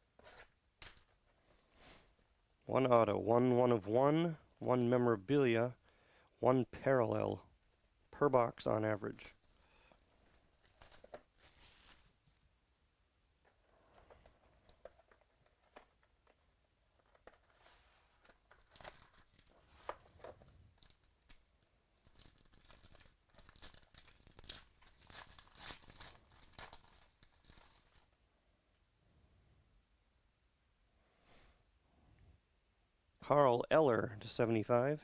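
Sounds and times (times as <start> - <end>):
plastic wrapping tearing and crinkling: 10.2 - 12.2, 18.2 - 20.0, 22.0 - 28.1.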